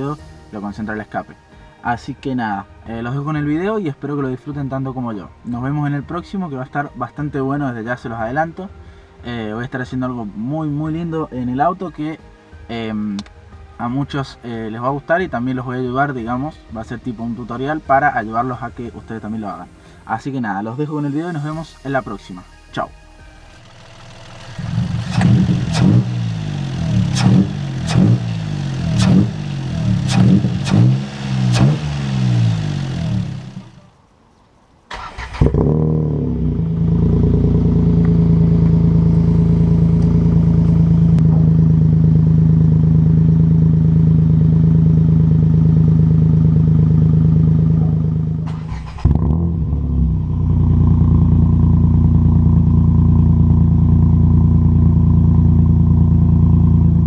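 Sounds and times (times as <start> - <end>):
car engine revving: 23.2 - 33.9, 34.9 - 57.0
car engine idling: 23.3 - 34.0, 35.4 - 57.0.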